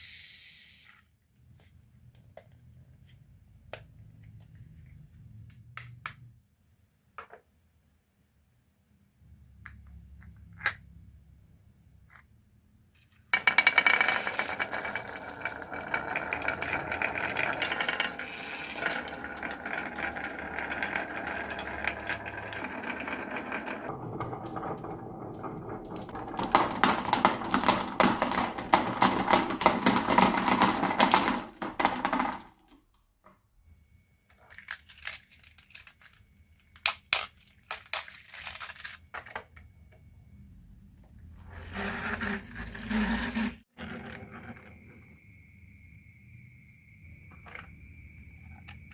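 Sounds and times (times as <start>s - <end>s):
marbles rattling on a track: 13.3s - 32.6s, 34.4s - 36.2s, 36.9s - 39.1s.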